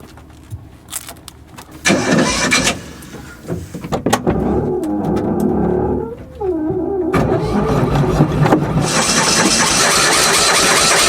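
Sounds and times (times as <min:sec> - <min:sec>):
car starter cranking: 0:01.8 - 0:06.4, 0:07.0 - 0:11.0
car engine running: 0:01.8 - 0:11.0.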